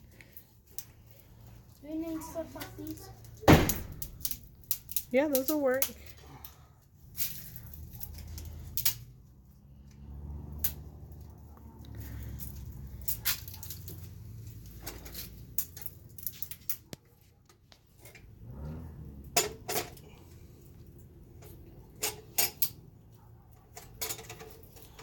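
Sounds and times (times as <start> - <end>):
metal stove parts clinking: 19.4 - 20.0, 21.3 - 22.8, 23.6 - 25.0.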